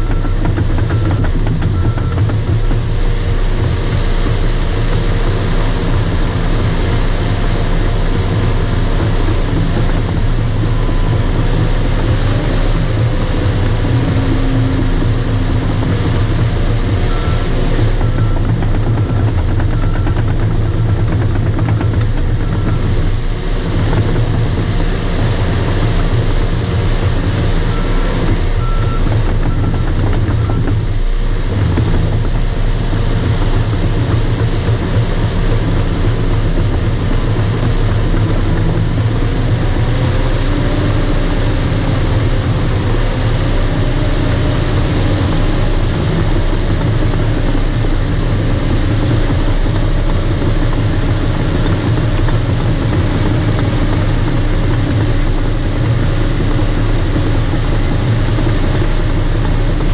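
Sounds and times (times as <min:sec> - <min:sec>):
reverse alarm beeps: 0:00.0 - 0:04.0, 0:10.5 - 0:23.1, 0:27.6 - 0:30.8
bulldozer diesel engine running: 0:00.0 - 0:59.9.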